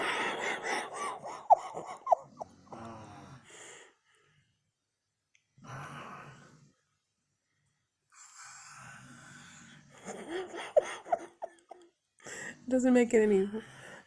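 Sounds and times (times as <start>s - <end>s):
person snoring: 0.0s - 3.8s.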